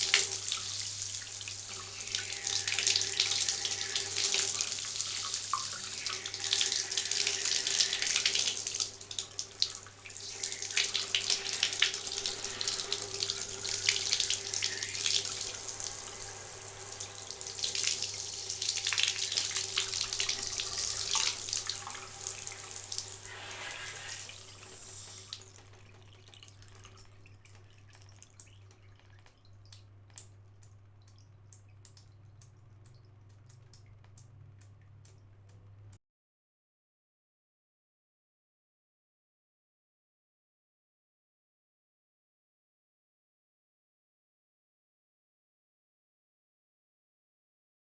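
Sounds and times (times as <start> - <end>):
shower spraying onto hand: 0.0 - 25.7.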